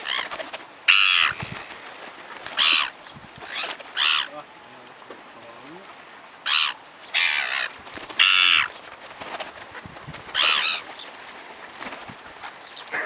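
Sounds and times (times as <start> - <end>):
seagulls squawking: 0.0 - 1.5, 2.6 - 4.4, 6.4 - 8.7, 10.3 - 11.0, 12.4 - 13.0.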